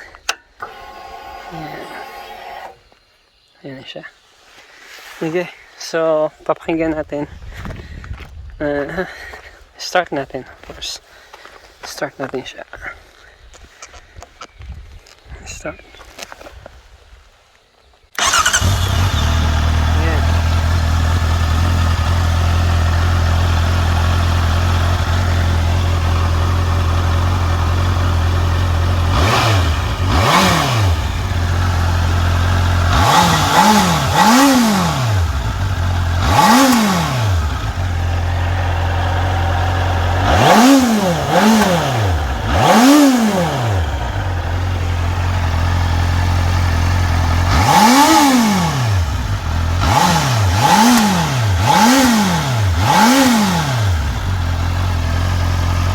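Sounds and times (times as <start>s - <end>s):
motorcycle engine idling and revving: 0.0s - 3.0s, 18.2s - 55.9s.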